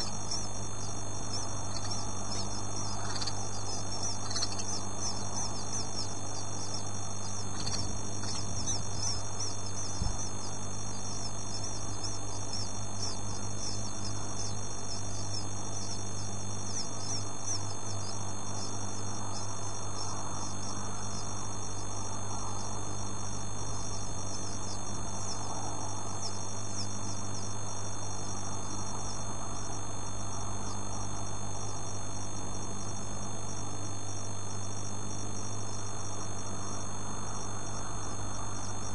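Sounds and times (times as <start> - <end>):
bird chicks cheeping: 0.0 - 31.0
low electrical hum: 0.0 - 38.9.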